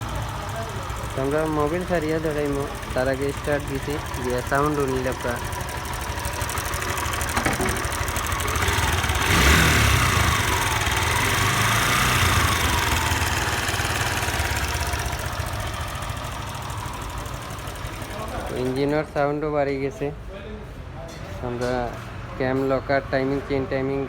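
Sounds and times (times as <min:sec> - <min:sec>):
motorcycle engine revving: 0:00.0 - 0:19.2.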